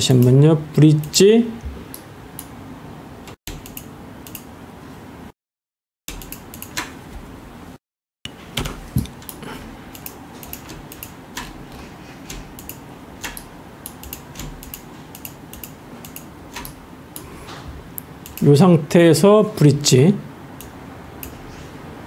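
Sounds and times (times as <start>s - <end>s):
mouse and keyboard clicking: 9.3s - 16.8s.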